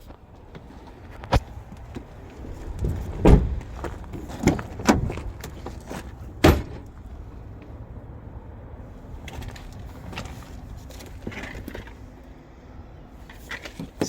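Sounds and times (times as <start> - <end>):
car doors clunking: 2.8 - 7.0.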